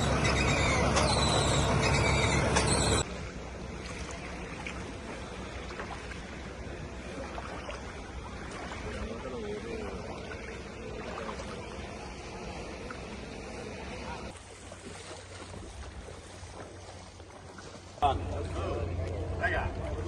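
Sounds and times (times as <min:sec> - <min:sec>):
loud engine with high squeals: 0:00.0 - 0:03.1
floodwater rushing: 0:00.0 - 0:20.0.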